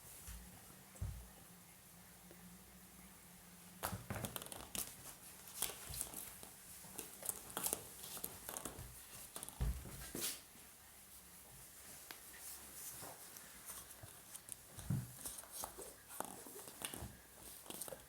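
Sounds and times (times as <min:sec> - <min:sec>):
crinkling and rustling: 0:03.8 - 0:10.5, 0:11.6 - 0:18.0.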